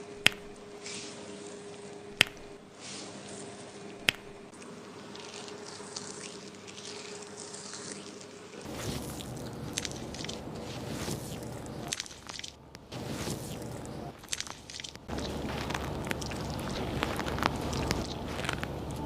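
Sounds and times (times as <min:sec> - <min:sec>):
steady low hum: 0:00.0 - 0:19.0
wet squishing of shampoo lather: 0:04.5 - 0:19.0.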